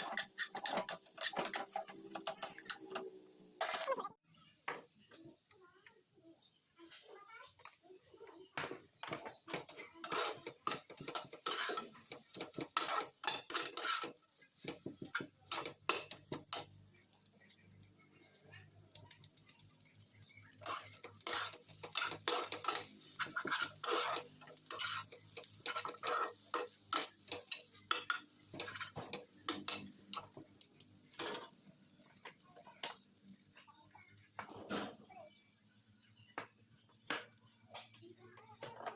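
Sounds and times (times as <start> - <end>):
metal utensil scraping a dish: 0.0 - 3.9, 9.5 - 16.7, 20.6 - 30.3.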